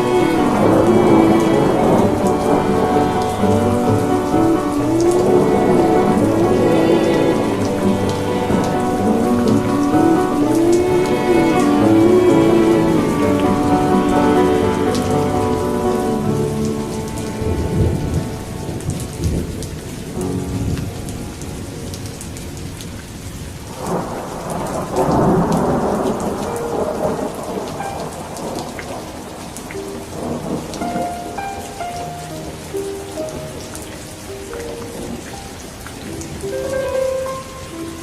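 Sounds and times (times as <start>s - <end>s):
thunder rumbling: 0.0s - 23.0s, 23.6s - 29.6s
rain pattering: 0.0s - 38.0s.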